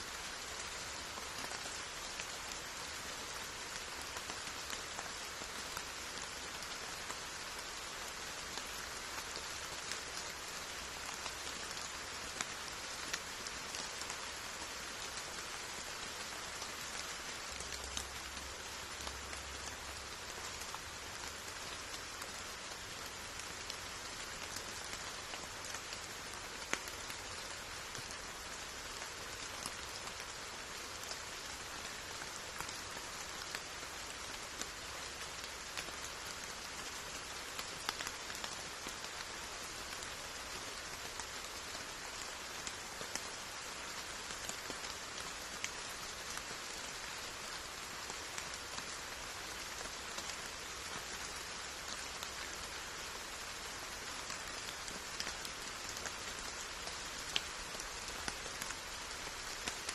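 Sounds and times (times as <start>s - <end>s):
steady rain hiss: 0.0s - 59.9s
rain drop ticks: 26.6s - 26.9s, 37.5s - 39.0s, 54.2s - 59.9s.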